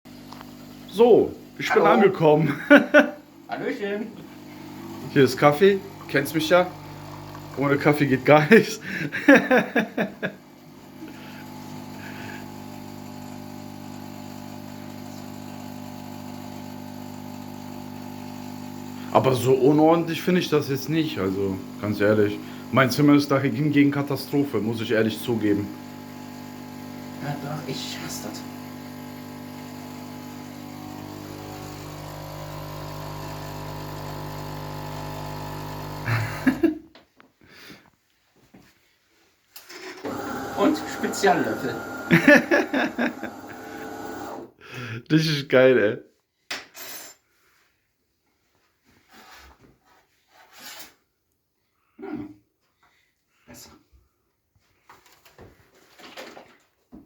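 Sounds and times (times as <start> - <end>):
machine hum: 40.1 - 44.4.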